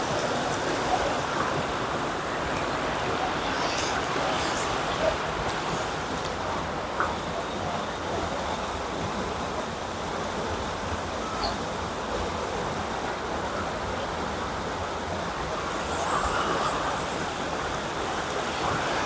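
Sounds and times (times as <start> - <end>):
river water rushing: 14.1 - 19.0.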